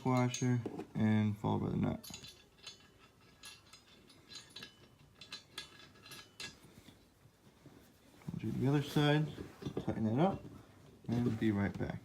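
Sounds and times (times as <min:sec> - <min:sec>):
faint metal clicks and clinks: 0:01.8 - 0:07.0.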